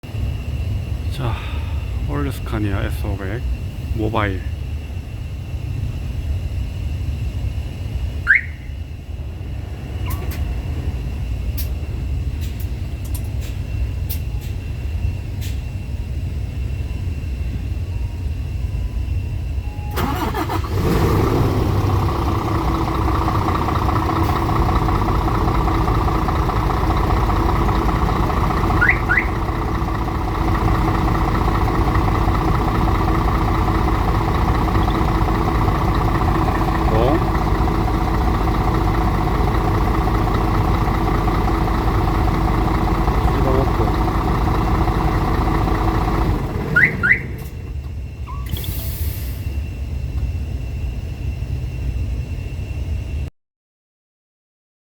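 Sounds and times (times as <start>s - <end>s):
truck diesel engine starting and idling: 0.1s - 4.9s, 19.6s - 50.3s
electronic chirps: 28.7s - 29.5s.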